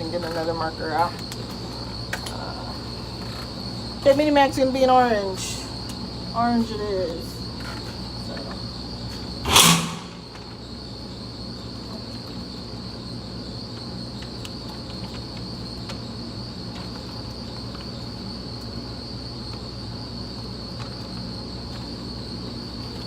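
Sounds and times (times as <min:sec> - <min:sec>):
steady background hum: 0:00.0 - 0:23.0
high-pitched whine: 0:09.4 - 0:10.6.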